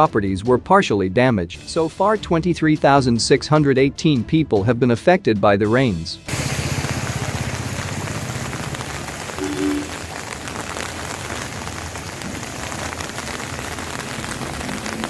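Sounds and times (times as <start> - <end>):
heavy rain falling: 6.3 - 15.0
brief tone: 9.4 - 10.0.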